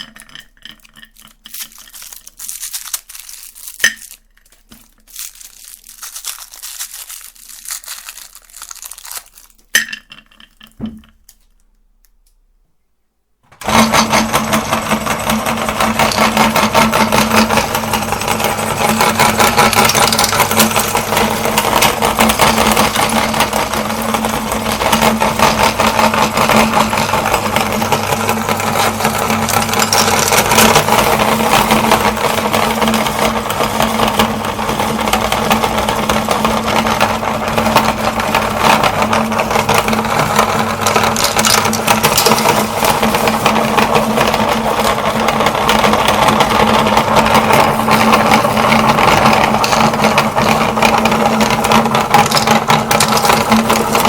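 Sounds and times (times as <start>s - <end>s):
grinder rattling: 0.0s - 11.2s, 13.6s - 54.0s
meat grinder motor running: 13.6s - 54.0s.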